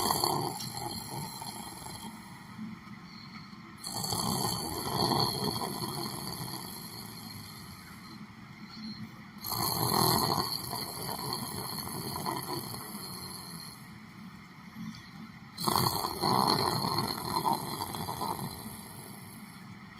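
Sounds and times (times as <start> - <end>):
person snoring: 0.0 - 2.5, 3.8 - 8.1, 9.4 - 13.8, 15.6 - 19.6.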